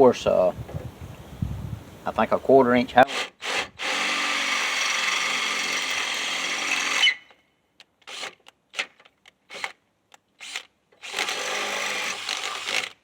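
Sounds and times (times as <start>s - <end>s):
electric drill boring into steel: 3.1s - 7.2s, 10.4s - 13.0s.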